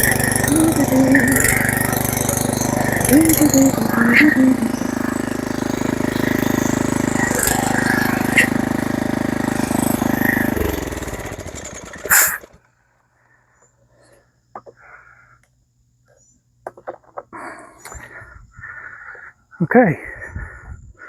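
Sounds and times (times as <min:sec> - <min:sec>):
small gasoline engine running: 0:00.0 - 0:12.7.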